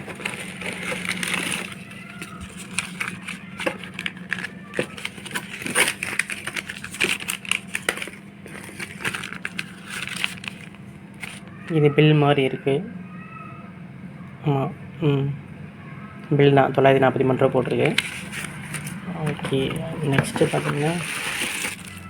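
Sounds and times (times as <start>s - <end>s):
packaging rustling and crackling: 0.0s - 11.5s, 17.8s - 22.0s
steady low hum: 0.0s - 22.0s.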